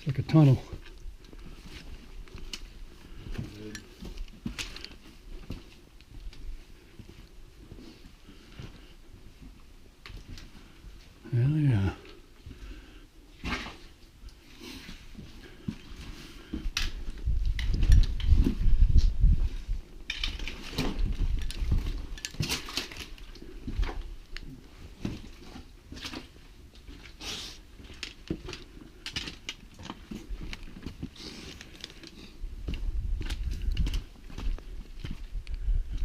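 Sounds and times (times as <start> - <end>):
footsteps crunching on rocky trail: 0.1 - 11.7, 15.0 - 36.0
wind buffeting microphone: 16.9 - 19.9, 32.6 - 36.0.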